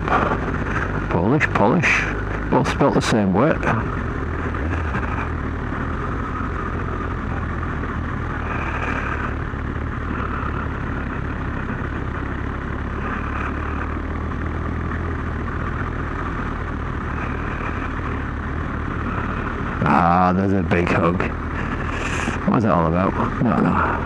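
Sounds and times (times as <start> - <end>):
motorcycle engine running: 0.0 - 24.0
wind and road noise: 0.0 - 24.0.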